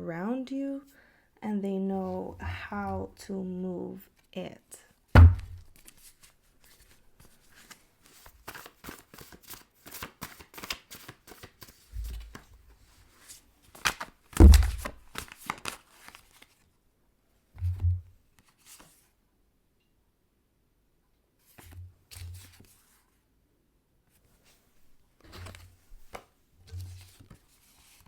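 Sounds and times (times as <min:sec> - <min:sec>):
dull thumps of cards: 0:05.2 - 0:05.7, 0:12.0 - 0:12.5, 0:14.4 - 0:15.1
cards being shuffled: 0:05.4 - 0:12.6, 0:13.2 - 0:16.6, 0:25.2 - 0:28.0.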